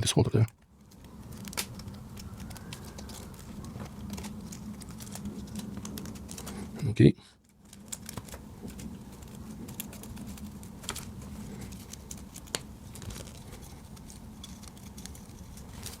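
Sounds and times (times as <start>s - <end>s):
plastic parts clicking and tapping: 0.0s - 0.7s.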